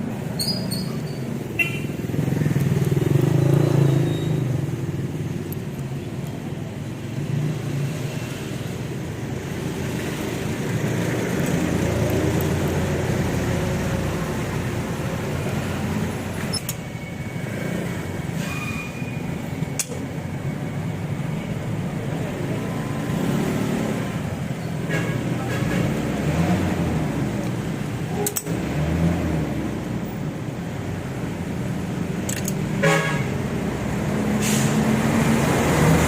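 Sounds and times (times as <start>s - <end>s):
sharp clicks: 28.2s - 28.6s, 32.2s - 32.6s.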